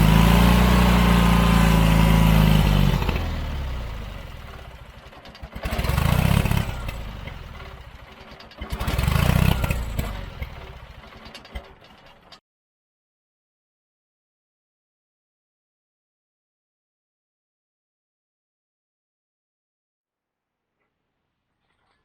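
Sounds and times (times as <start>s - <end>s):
engine stalling: 0.0s - 12.4s
riding mower engine running: 0.0s - 12.4s.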